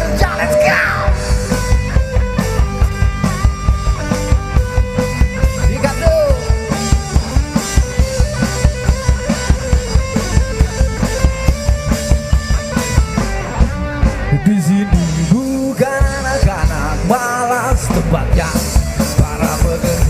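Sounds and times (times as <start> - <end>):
driving drum beat: 0.0 - 20.0
sustained electric guitar: 0.0 - 20.0.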